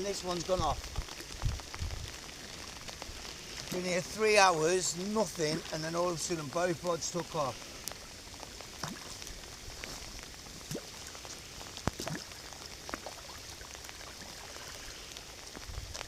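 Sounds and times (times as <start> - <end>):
pouring rain: 0.0 - 16.0.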